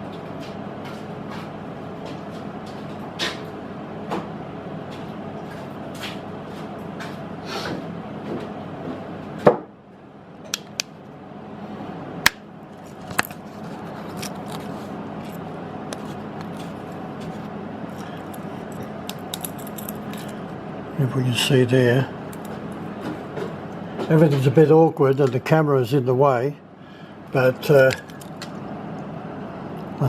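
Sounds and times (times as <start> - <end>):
workshop hum: 0.0 - 30.0.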